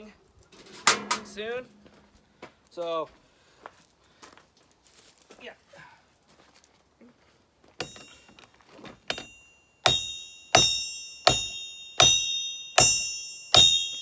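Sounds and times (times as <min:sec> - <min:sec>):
hammer striking steel on anvil: 0:00.8 - 0:02.2, 0:07.8 - 0:08.3, 0:09.1 - 0:14.0.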